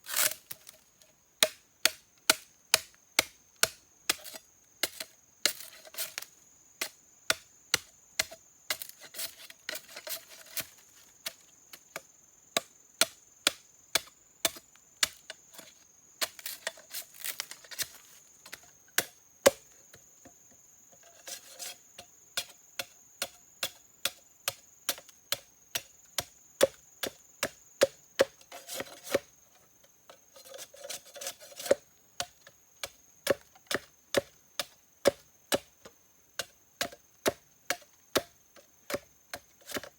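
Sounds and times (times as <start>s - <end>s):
chopping into wood: 1.4s - 9.0s, 12.6s - 15.2s, 16.2s - 19.7s, 31.6s - 35.7s, 36.4s - 39.9s
scraping: 15.6s - 18.6s.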